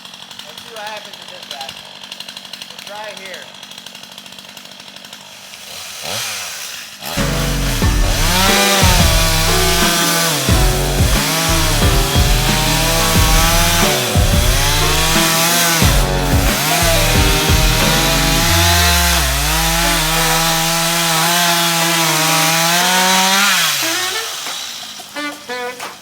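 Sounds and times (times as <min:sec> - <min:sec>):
chainsaw cutting wood: 0:00.0 - 0:26.0
background music: 0:07.2 - 0:21.4.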